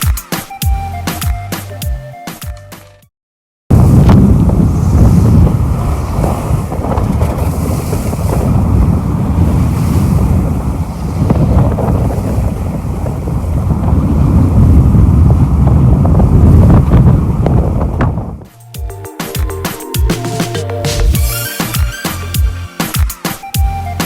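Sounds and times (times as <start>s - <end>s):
wind buffeting microphone: 3.7s - 18.5s
waves rushing along hull: 3.7s - 23.8s.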